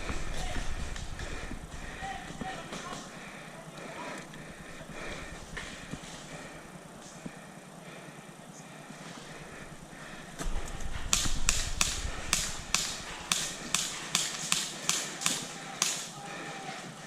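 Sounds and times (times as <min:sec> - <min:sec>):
airsoft gun shots: 0:10.4 - 0:16.2.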